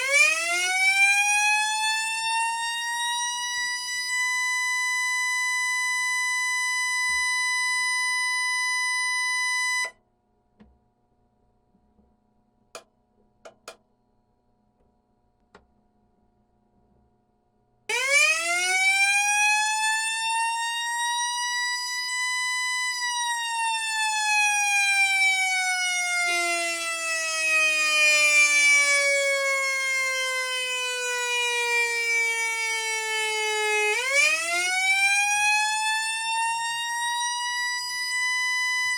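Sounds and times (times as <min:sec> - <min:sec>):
siren wailing: 0:00.0 - 0:09.9, 0:17.9 - 0:38.9.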